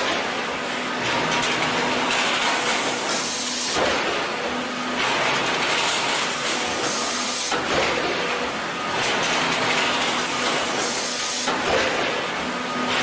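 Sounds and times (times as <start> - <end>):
machinery hissing: 6.0 - 7.6.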